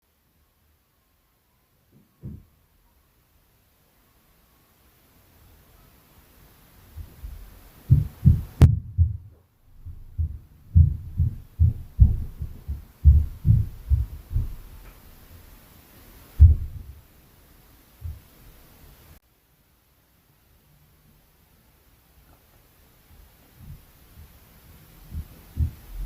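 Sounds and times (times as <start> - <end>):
heavy footsteps through ceiling: 6.9 - 15.5, 16.2 - 17.1, 18.0 - 18.4, 23.1 - 26.0.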